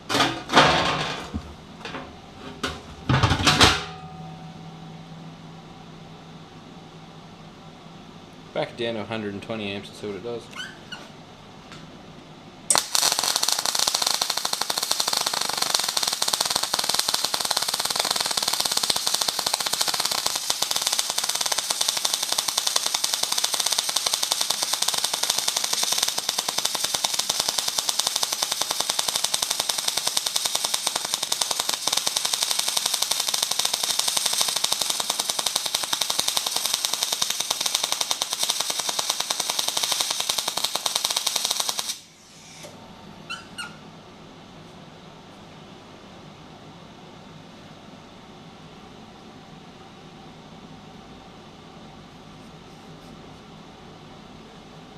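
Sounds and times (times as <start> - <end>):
welding arc crackling: 12.7 - 42.1.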